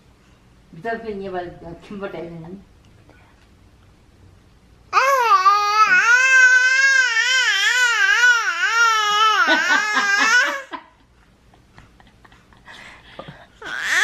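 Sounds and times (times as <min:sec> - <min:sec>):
baby vocalising: 0:04.9 - 0:10.6, 0:13.6 - 0:14.0.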